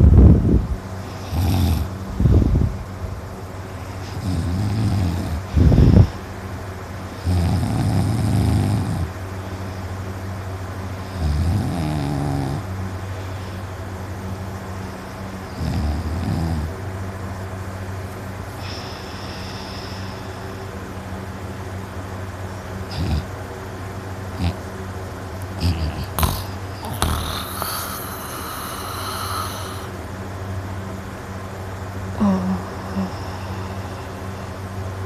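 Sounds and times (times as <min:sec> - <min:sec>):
steady low hum: 0:00.0 - 0:35.0
man snoring loudly: 0:01.1 - 0:01.9, 0:04.0 - 0:06.1, 0:07.2 - 0:09.1, 0:11.1 - 0:12.7, 0:15.5 - 0:16.7, 0:22.9 - 0:23.3, 0:24.4 - 0:24.6, 0:25.5 - 0:30.0.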